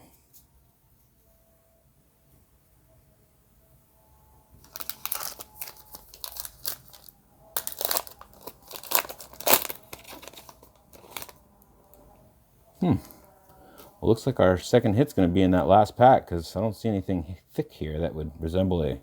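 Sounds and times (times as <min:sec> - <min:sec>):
wrapper tearing and crinkling: 0:04.6 - 0:11.4.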